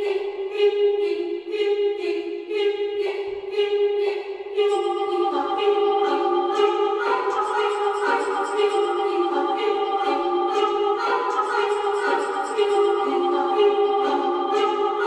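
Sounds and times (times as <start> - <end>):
choir-like chords: 0.0 - 15.0
steady music pulse: 4.6 - 15.0.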